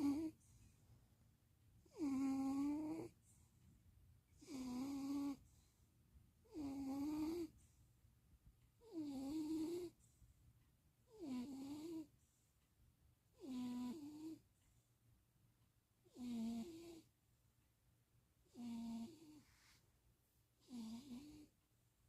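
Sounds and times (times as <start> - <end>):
cat snoring: 0.0 - 0.4, 1.8 - 3.2, 4.4 - 5.4, 6.4 - 7.6, 8.8 - 10.0, 11.1 - 12.1, 13.4 - 14.4, 16.0 - 17.1, 18.4 - 19.8, 20.6 - 21.5.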